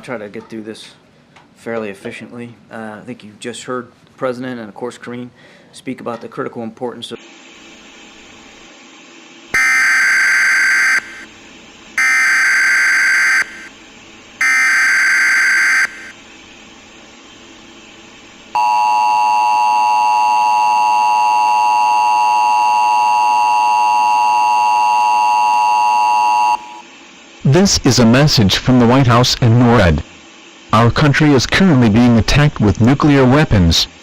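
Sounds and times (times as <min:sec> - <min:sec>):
steady two-tone alert signal: 0:09.6 - 0:11.3, 0:12.0 - 0:13.7, 0:14.4 - 0:16.1, 0:18.6 - 0:26.8.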